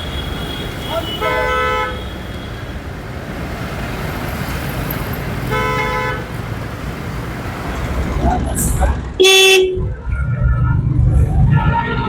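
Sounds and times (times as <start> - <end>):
vehicle horn blasts: 0.0 - 2.7, 5.5 - 6.3, 9.2 - 9.8
road traffic noise: 0.0 - 12.0.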